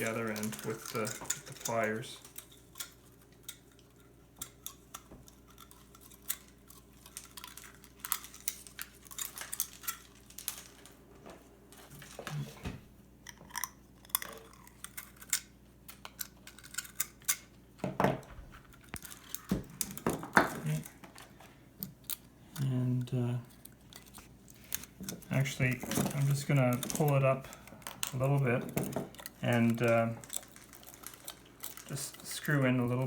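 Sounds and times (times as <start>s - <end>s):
pliers and cable handling: 23.5s - 32.9s.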